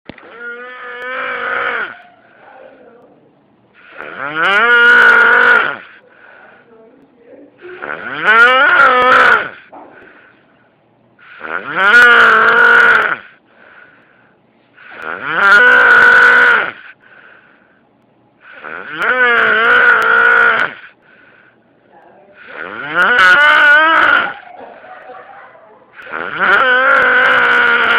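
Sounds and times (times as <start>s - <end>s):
man snoring loudly: 0.2s - 2.0s, 3.8s - 6.0s, 7.8s - 9.6s, 11.2s - 13.4s, 14.8s - 17.0s, 18.4s - 20.9s, 22.4s - 24.4s, 26.0s - 27.9s.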